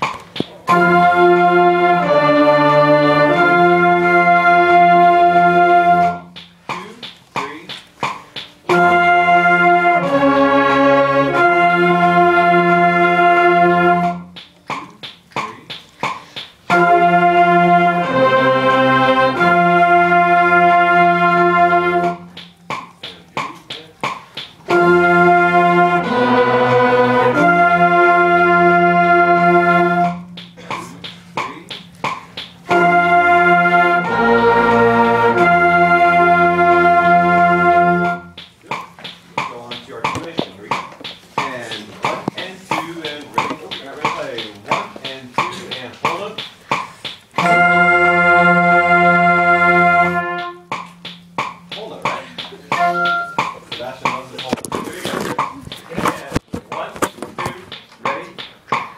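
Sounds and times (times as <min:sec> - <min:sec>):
woodwind band sustained chords: 0:00.6 - 0:06.4, 0:08.6 - 0:14.4, 0:16.7 - 0:22.5, 0:24.7 - 0:38.5, 0:47.4 - 0:53.9
woodwind band short detached notes: 0:00.7 - 0:06.9, 0:08.7 - 0:14.5, 0:16.7 - 0:22.5, 0:24.7 - 0:31.2, 0:32.7 - 0:38.5, 0:47.4 - 0:51.8, 0:52.7 - 0:53.7.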